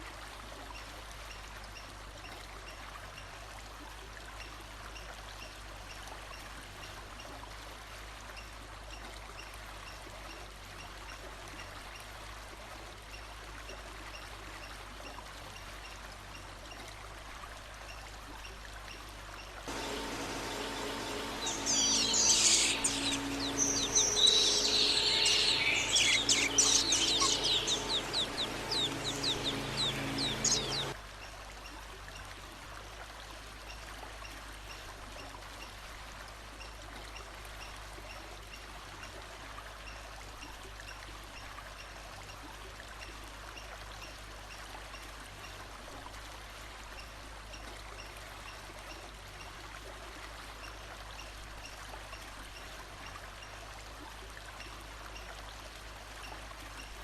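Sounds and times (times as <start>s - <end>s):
flowing water: 0.0s - 57.0s
songbird singing: 19.7s - 31.0s.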